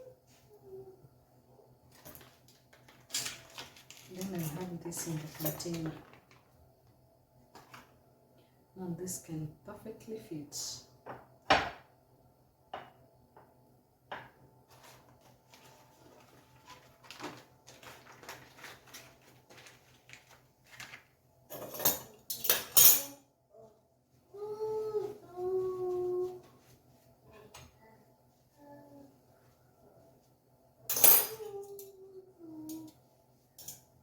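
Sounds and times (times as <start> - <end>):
kitchen utensils clinking: 3.0 - 6.2, 21.5 - 23.2, 30.9 - 31.9.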